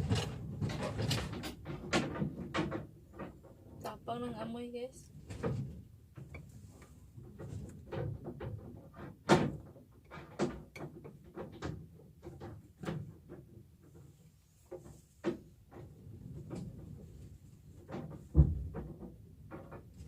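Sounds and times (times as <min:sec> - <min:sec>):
hard objects knocking and clattering: 0:00.0 - 0:03.9, 0:07.2 - 0:14.2, 0:14.8 - 0:20.0.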